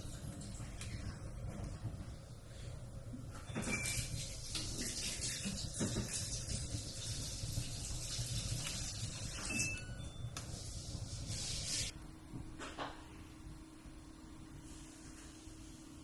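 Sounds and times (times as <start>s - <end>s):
wood fire hissing: 0.0s - 3.3s, 3.9s - 9.5s, 10.4s - 12.0s.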